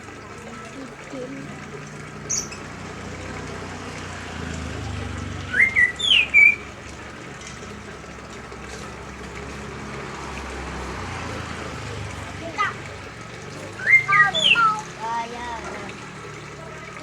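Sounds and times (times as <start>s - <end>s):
cage bird whistled chirps: 5.5s - 6.6s, 13.8s - 14.8s.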